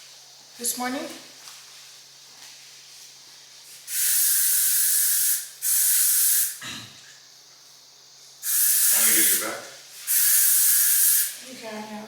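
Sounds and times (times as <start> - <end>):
aerosol spray can hissing: 3.9 - 6.6, 8.4 - 11.5.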